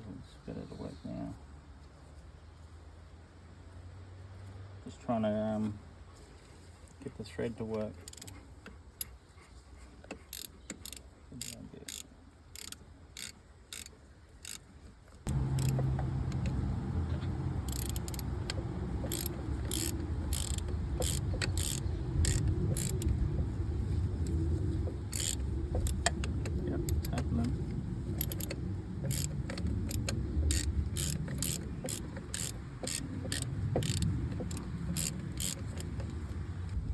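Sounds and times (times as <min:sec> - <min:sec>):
ratchet clicking: 0:08.0 - 0:08.4, 0:10.2 - 0:14.7, 0:15.3 - 0:16.5, 0:17.7 - 0:23.2, 0:24.2 - 0:27.5, 0:28.1 - 0:36.1
low machine drone: 0:15.3 - 0:31.2.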